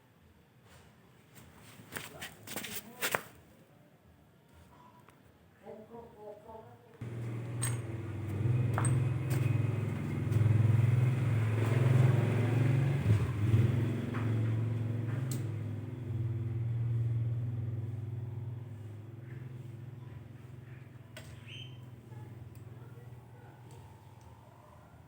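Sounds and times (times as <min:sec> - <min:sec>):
engine humming: 0:07.0 - 0:24.6.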